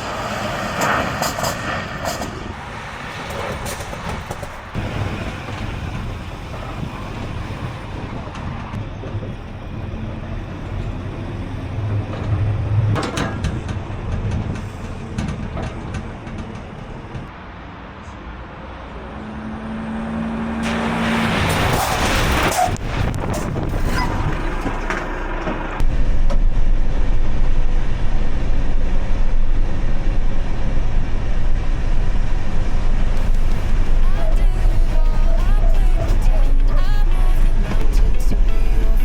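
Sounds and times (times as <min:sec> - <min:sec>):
truck engine running: 0:18.9 - 0:39.0.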